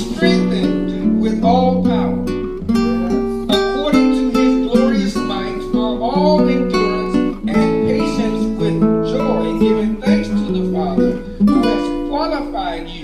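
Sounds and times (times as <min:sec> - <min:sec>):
acoustic guitar strummed and plucked: 0:00.0 - 0:13.0.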